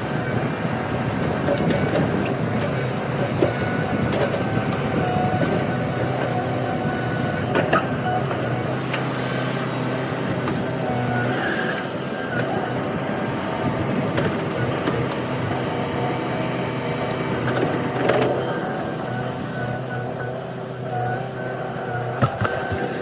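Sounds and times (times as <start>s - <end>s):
backhoe diesel engine: 0.0s - 23.0s.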